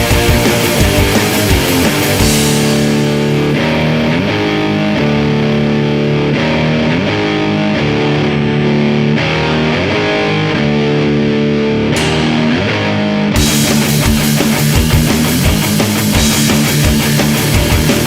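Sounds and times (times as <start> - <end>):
distorted electric guitar chords: 0.0 - 18.0
heavy rock music: 0.0 - 18.0.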